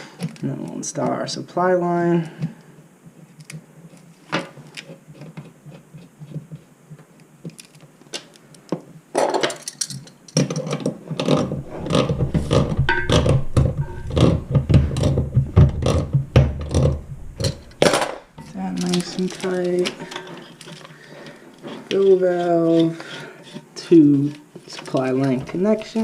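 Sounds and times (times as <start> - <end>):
clicks and rattles of fittings: 9.2 - 26.0.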